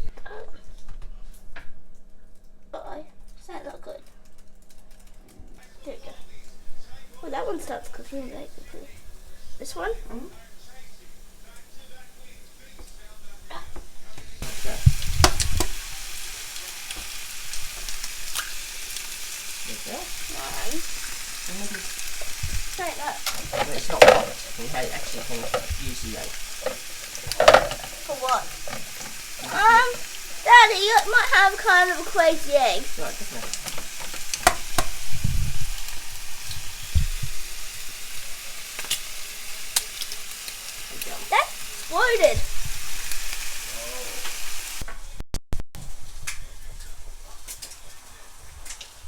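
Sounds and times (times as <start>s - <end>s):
eggs sizzling in a pan: 2.8s - 45.2s, 45.8s - 49.0s
utensil clicking in pan: 14.4s - 19.1s, 21.0s - 35.1s, 38.7s - 41.2s.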